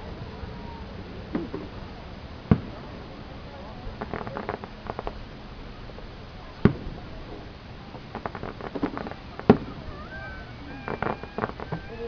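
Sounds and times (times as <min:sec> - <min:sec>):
fireworks bangs: 0:00.0 - 0:12.0
small firework pops: 0:01.3 - 0:01.8, 0:02.5 - 0:02.9, 0:04.0 - 0:05.2, 0:06.6 - 0:12.0.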